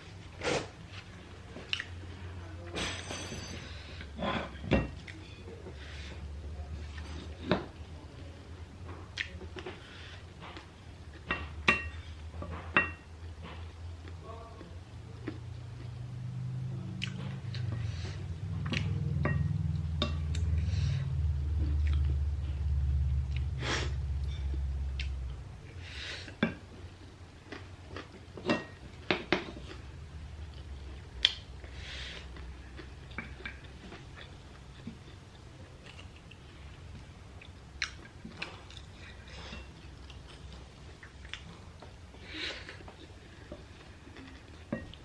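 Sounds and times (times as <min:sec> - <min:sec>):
chewing and crunching snack: 0:21.6 - 0:22.6, 0:30.5 - 0:41.9.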